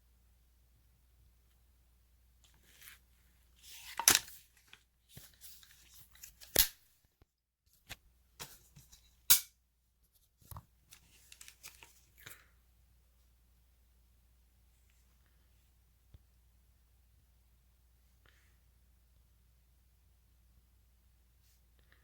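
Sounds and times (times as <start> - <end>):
rifle handling clicks and knocks: 3.8 - 4.8.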